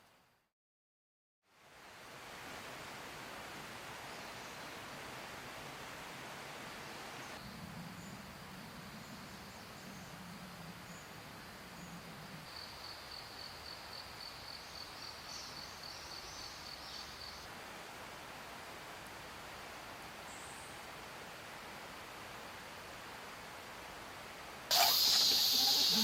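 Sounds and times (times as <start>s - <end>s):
insect chirping: 12.5s - 17.5s, 24.7s - 26.0s
steady rush of noise: 24.7s - 26.0s.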